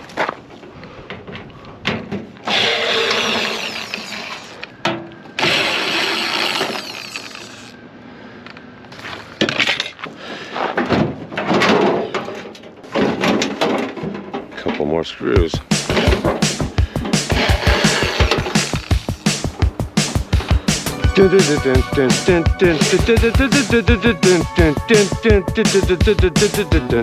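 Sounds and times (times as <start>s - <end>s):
cordless drill spinning out screws: 2.4s - 4.7s, 5.4s - 7.8s, 17.3s - 19.2s.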